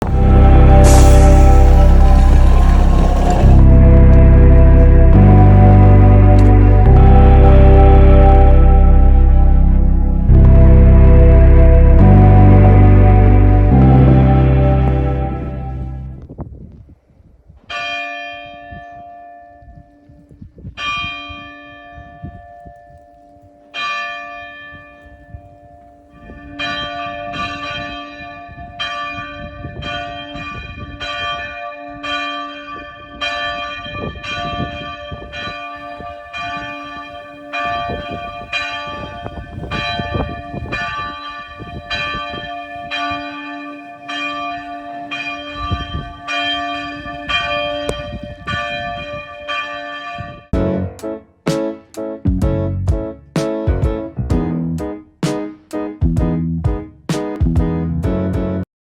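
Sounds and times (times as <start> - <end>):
church bell tolling: 0.0 - 16.2, 17.7 - 51.2
low hum tone: 0.0 - 16.2.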